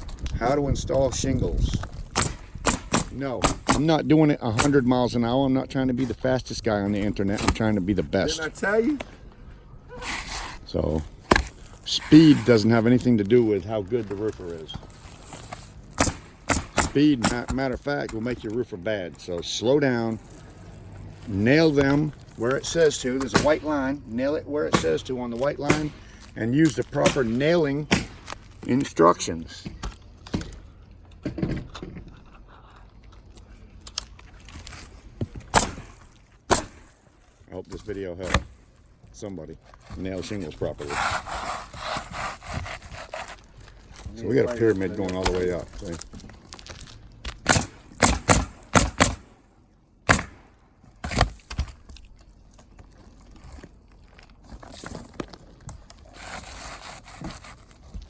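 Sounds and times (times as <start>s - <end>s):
shingles rustling and scraping: 0.0s - 32.3s, 33.2s - 58.0s
nail gun firing: 2.1s - 4.0s, 16.0s - 17.6s, 25.7s - 26.0s, 35.5s - 37.0s, 47.4s - 49.3s, 50.0s - 51.3s.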